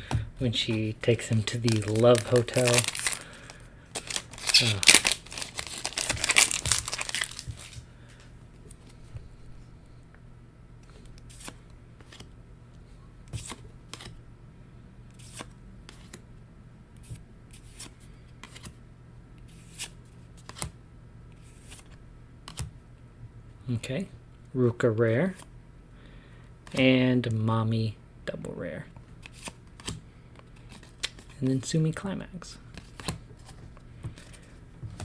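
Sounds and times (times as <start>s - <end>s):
card pack crinkling: 0.6s - 8.3s
trading cards being flipped: 0.6s - 8.3s.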